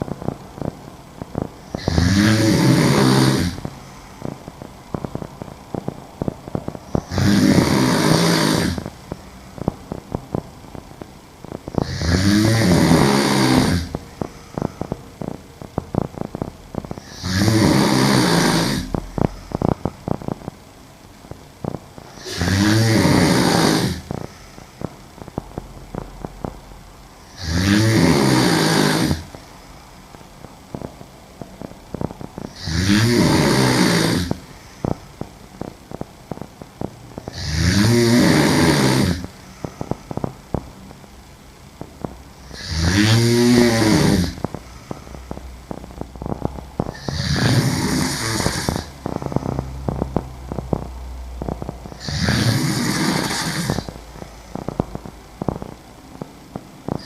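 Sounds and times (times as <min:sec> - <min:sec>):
woman snoring loudly: 0:00.0 - 0:05.8, 0:06.5 - 0:09.7, 0:11.7 - 0:20.5, 0:21.6 - 0:25.3, 0:27.2 - 0:29.4, 0:31.6 - 0:35.0, 0:37.2 - 0:40.3, 0:42.4 - 0:55.8.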